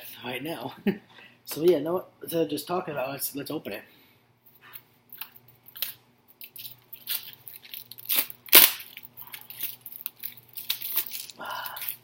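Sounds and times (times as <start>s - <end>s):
plastic package clicking and crinkling: 5.2s - 12.0s.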